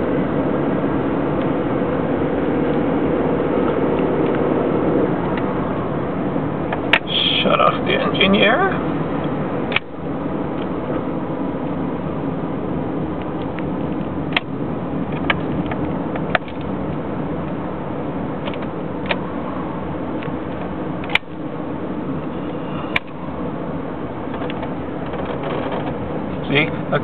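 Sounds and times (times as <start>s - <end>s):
car cabin hum: 0.0s - 27.0s
sharp dashboard clicks: 6.7s - 7.2s, 9.2s - 9.9s, 13.2s - 17.6s, 18.4s - 19.3s, 20.2s - 21.4s, 22.9s - 23.2s, 24.3s - 26.5s.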